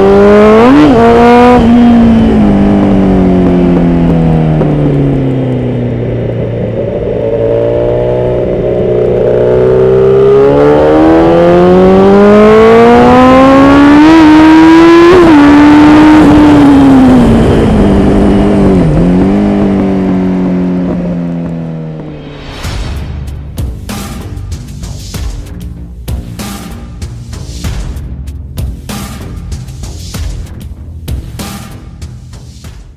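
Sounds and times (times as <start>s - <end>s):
motorcycle engine revving: 0.0s - 22.5s.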